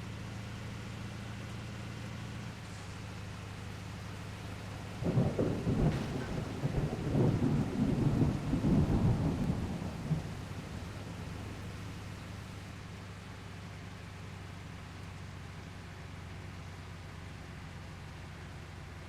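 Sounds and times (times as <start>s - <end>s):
truck engine drone: 0.0s - 19.0s
low rumbling and crackling: 2.5s - 13.1s.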